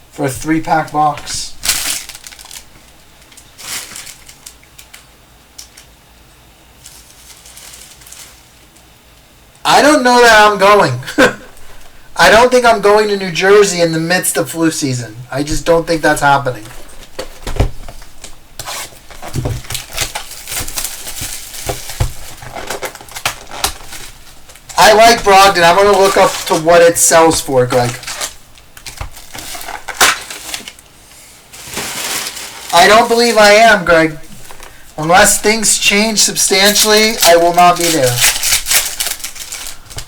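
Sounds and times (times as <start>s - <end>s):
cards and packaging rustling: 0.4s - 5.9s, 6.8s - 8.5s, 15.4s - 30.9s, 31.5s - 40.0s.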